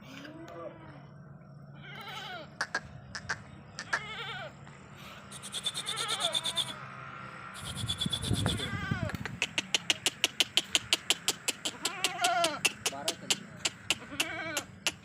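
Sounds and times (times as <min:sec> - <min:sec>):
goat kids bleating: 0:01.8 - 0:02.6, 0:03.8 - 0:04.7, 0:05.7 - 0:06.8, 0:08.4 - 0:09.2, 0:11.6 - 0:12.8, 0:13.6 - 0:15.0
high-pitched rattling buzz: 0:05.2 - 0:06.9, 0:07.5 - 0:11.9.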